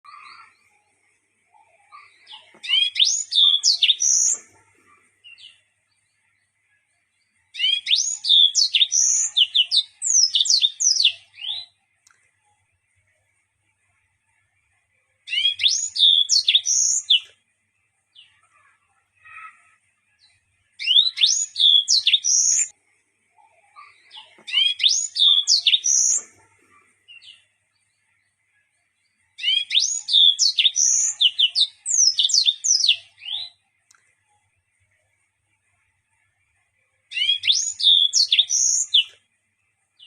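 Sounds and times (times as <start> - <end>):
canary singing: 0.0 - 0.7, 1.5 - 4.6, 7.5 - 11.8, 15.3 - 17.4, 18.1 - 22.7, 23.4 - 26.5, 29.4 - 33.7, 37.1 - 39.2.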